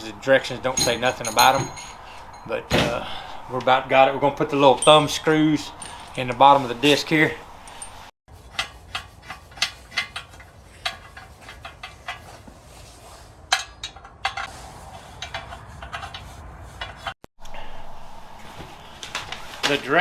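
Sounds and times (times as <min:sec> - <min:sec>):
small metal parts clinking on metal: 0:00.1 - 0:08.1.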